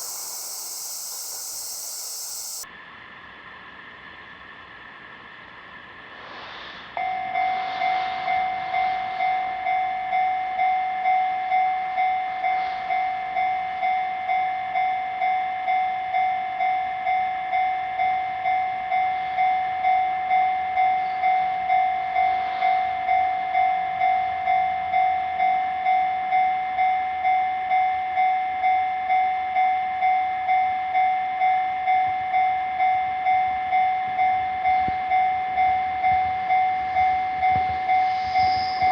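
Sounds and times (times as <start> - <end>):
level crossing alarm clanging: 0.0 - 2.6.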